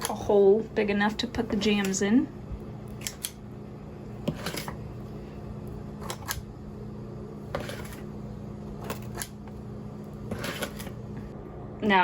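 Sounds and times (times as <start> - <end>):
steady low hum: 0.0 - 12.0
spoon scraping a baking tray: 4.2 - 4.9, 7.4 - 9.5, 10.2 - 11.0.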